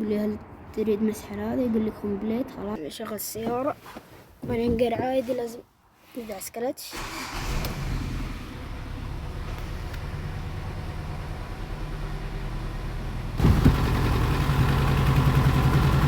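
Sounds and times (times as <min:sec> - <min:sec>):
car engine idling: 0:08.4 - 0:16.0.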